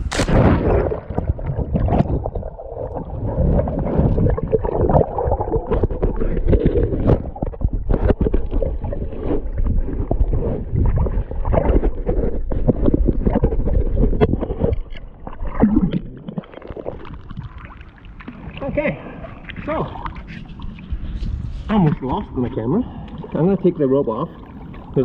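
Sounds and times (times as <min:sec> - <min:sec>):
muffled underwater churning: 0:00.0 - 0:25.0
water splashes and knocks: 0:03.9 - 0:18.8.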